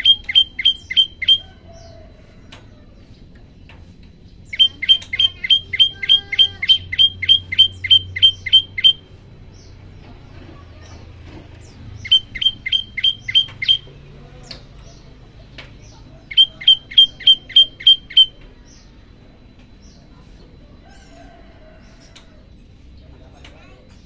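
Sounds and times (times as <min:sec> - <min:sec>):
bird singing sharp notes: 0:00.0 - 0:01.4, 0:04.5 - 0:09.7, 0:12.0 - 0:13.9, 0:16.3 - 0:18.4
faint bird chirps: 0:00.0 - 0:24.0.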